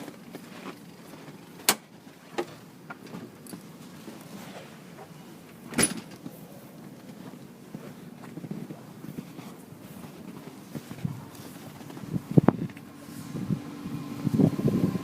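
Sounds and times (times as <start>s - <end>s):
steady low rumble: 6.3s - 15.0s.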